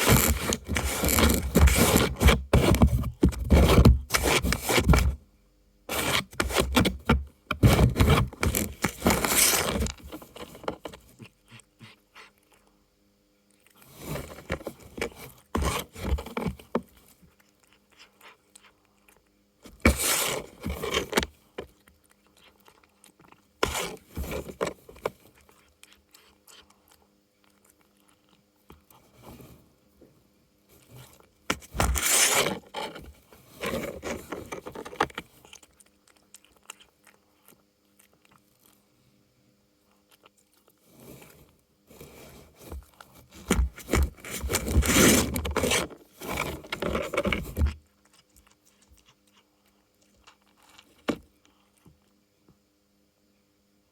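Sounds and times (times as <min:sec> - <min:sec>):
cats scratching cardboard: 0:00.0 - 0:05.2, 0:05.9 - 0:12.7, 0:13.8 - 0:27.1, 0:30.7 - 0:35.8, 0:40.7 - 0:52.0.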